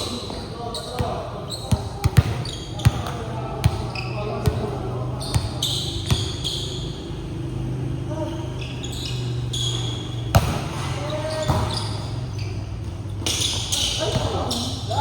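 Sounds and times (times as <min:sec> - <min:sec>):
players' voices: 0:00.0 - 0:15.0
basketball bouncing on gym floor: 0:01.0 - 0:04.7, 0:09.8 - 0:12.2.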